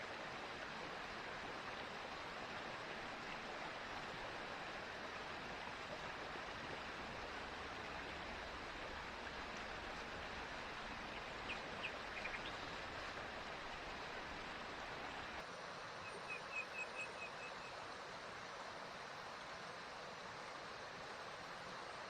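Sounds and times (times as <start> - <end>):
forest stream flowing: 0.0 - 22.0
bird chirps: 11.4 - 12.6, 16.1 - 17.8.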